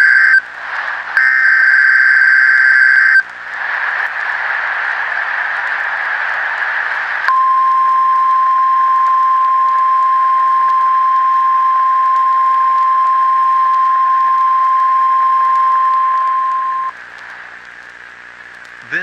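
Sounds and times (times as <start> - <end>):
steady electronic tone: 0.0 - 0.4, 1.2 - 3.2
static hiss: 0.0 - 19.0.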